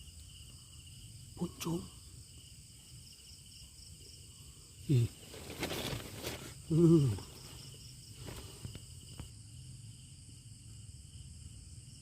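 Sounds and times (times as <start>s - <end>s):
crickets chirring: 0.0s - 12.0s
short voice exclamation: 6.7s - 7.3s.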